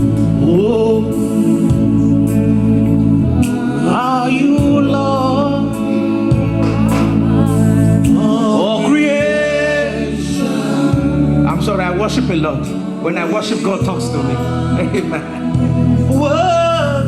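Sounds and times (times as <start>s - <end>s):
person singing: 0.0s - 12.0s
sustained keyboard chords: 0.0s - 17.0s.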